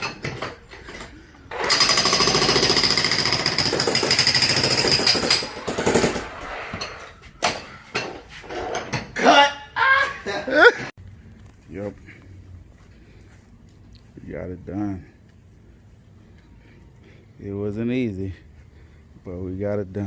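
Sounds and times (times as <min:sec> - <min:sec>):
jackhammer breaking concrete: 0:01.5 - 0:06.3.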